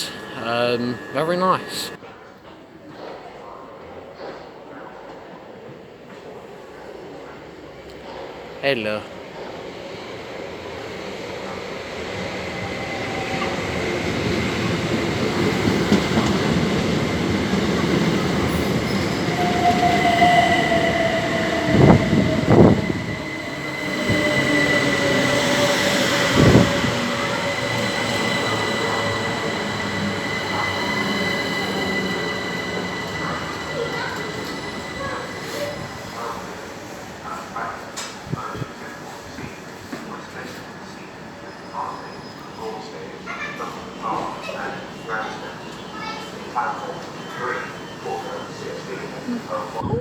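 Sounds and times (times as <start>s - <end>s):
train rumble: 0.0s - 2.0s, 9.1s - 37.6s.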